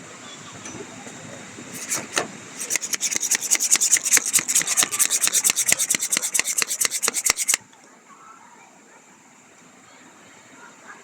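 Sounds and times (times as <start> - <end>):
spoon beating coffee in cup: 1.8 - 7.6.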